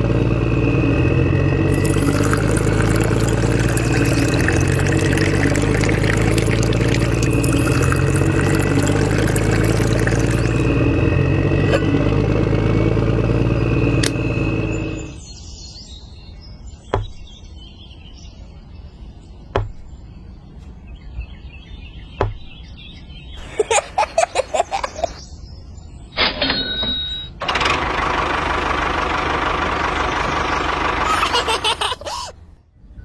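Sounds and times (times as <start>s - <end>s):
small motor running: 1.7s - 10.8s
sharp knocks: 17.0s - 17.2s, 19.6s - 19.8s, 22.2s - 22.5s.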